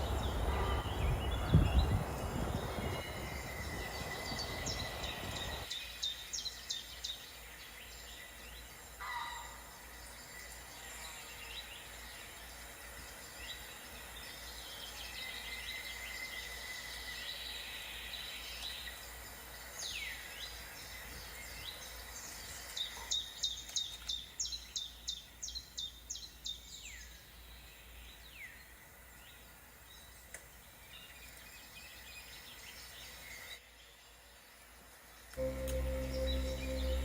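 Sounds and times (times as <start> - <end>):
rapid sharp high bird notes: 35.4 - 37.0
thin steady high tone: 35.4 - 37.0.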